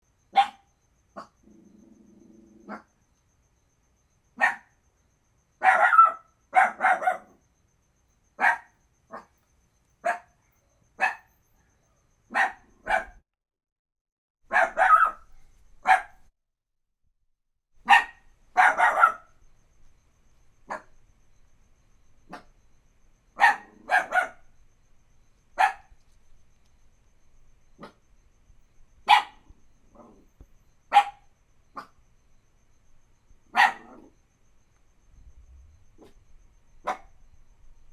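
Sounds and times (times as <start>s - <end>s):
puppy barking: 0.3s - 1.4s, 4.4s - 4.7s, 5.6s - 7.4s, 8.4s - 9.3s, 10.0s - 10.3s, 11.0s - 11.3s, 12.3s - 13.2s, 14.5s - 16.2s, 17.8s - 19.3s, 20.7s - 20.9s, 22.3s - 22.5s, 23.4s - 24.5s, 25.6s - 25.9s, 29.0s - 30.3s, 30.9s - 31.2s, 33.5s - 34.2s, 36.8s - 37.1s.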